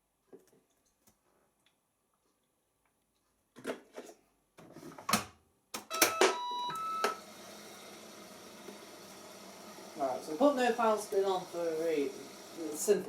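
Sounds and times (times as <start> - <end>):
washing machine low hiss: 9.5 - 13.0.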